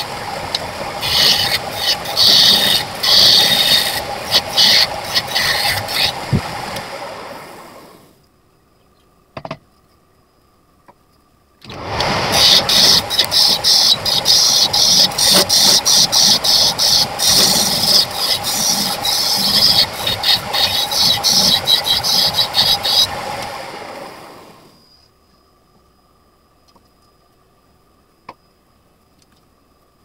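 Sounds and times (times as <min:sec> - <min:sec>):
wood lathe running: 0:00.0 - 0:08.0, 0:11.7 - 0:24.7
tool hissing cutting wood: 0:00.0 - 0:08.1, 0:11.7 - 0:24.8.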